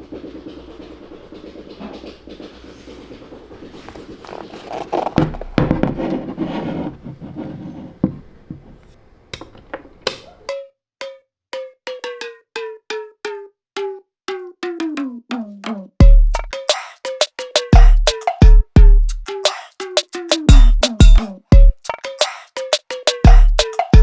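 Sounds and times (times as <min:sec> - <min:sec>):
rustling: 0:00.5 - 0:08.0
sparse percussive music: 0:10.5 - 0:24.0.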